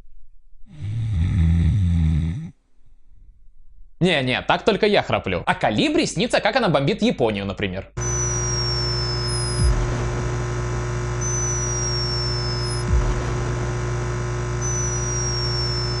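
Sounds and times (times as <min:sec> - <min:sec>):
hummingbird snoring whistles: 0:00.8 - 0:02.5, 0:08.0 - 0:09.7, 0:11.2 - 0:12.9, 0:14.6 - 0:16.0
microphone hum: 0:08.0 - 0:16.0.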